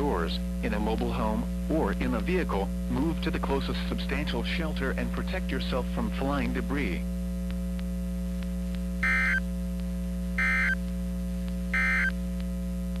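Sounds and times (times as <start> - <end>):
electrical hum: 0.0 - 13.0
harsh two-tone digital bursts: 9.0 - 9.4, 10.4 - 10.8, 11.7 - 12.1.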